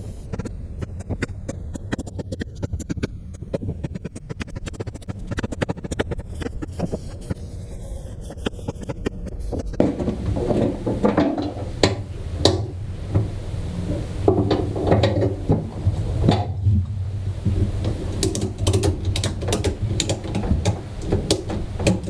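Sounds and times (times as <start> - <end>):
rubbing and knocking: 0.3 - 22.0
lumber and hardware clicks and knocks: 9.8 - 16.7, 17.5 - 22.0.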